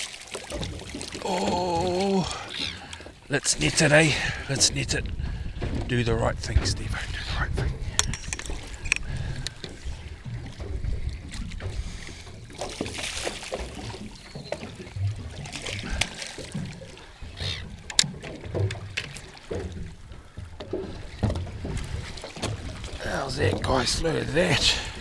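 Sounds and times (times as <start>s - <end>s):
water slopping against boat hull: 0.0s - 25.0s
wind rumbling on microphone: 4.2s - 12.6s
sharp knocks on boat: 9.5s - 16.8s, 17.7s - 23.8s.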